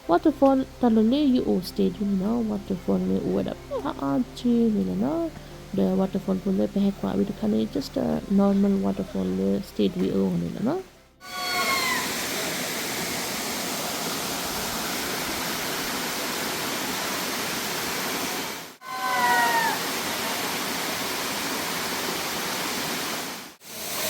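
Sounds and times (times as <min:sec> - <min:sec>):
brief high falling call: 0:11.2 - 0:12.2, 0:18.8 - 0:20.3
waterfall rushing: 0:11.2 - 0:24.0.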